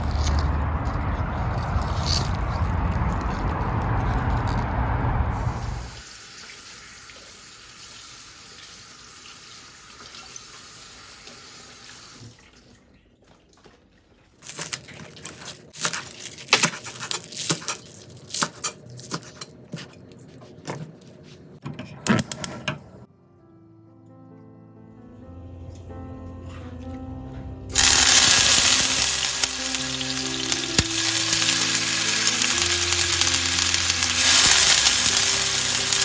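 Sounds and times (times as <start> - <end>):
tap water running: 5.4 - 12.8, 27.8 - 36.0.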